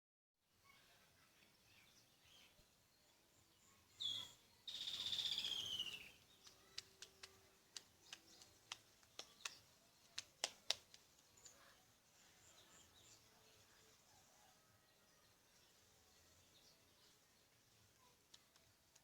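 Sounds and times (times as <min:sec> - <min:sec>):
songbird whistle and trill: 0:04.0 - 0:06.4.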